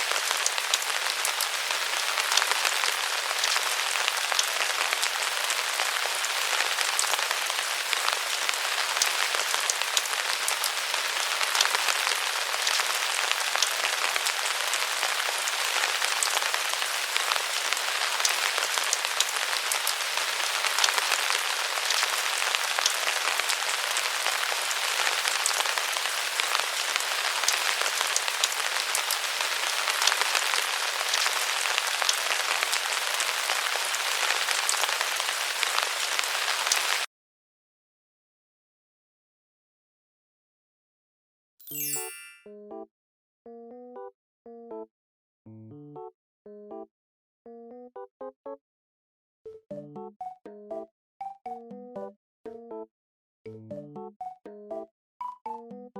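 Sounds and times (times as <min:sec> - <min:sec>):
raindrops ticking: 0:00.0 - 0:37.0
rain hissing: 0:00.0 - 0:37.1.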